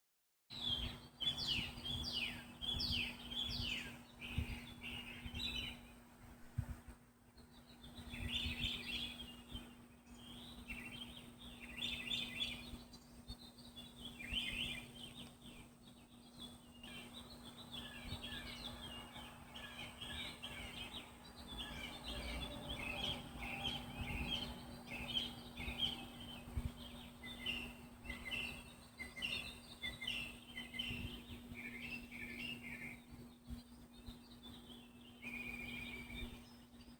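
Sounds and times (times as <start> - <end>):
songbirds chirping: 0.5 - 36.9.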